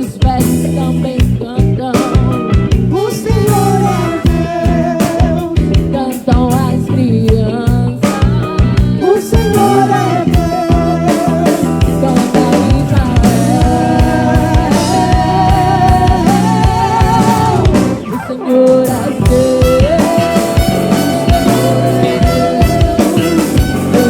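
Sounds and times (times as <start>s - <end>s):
bass guitar: 0.0s - 24.0s
drums: 0.0s - 24.0s
keyboards: 0.0s - 24.0s
lead melody with vibrato: 8.6s - 24.0s.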